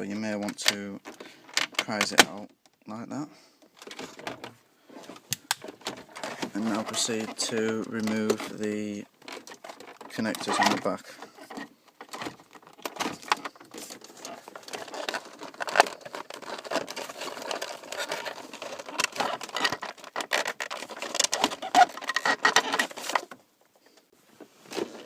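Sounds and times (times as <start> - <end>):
handling noise of loose unit: 3.8 - 23.4.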